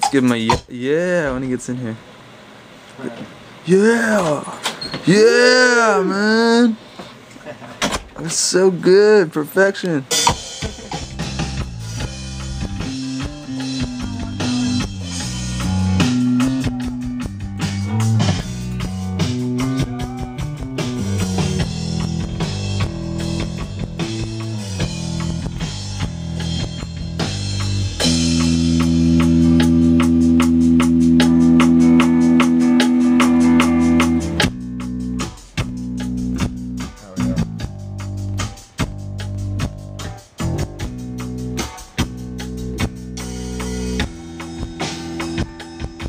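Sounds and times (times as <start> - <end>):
rock band playing: 10.1 - 46.0.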